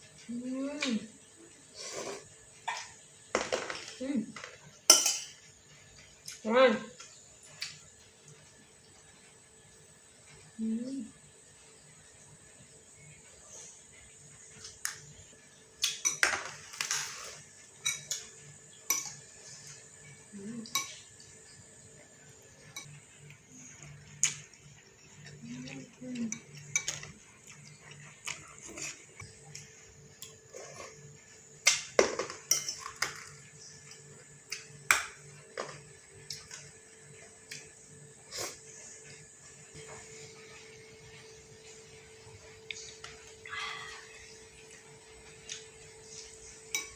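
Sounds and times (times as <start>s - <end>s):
cutlery clinking on a dish: 4.9s - 5.5s, 31.7s - 33.4s, 46.7s - 46.9s.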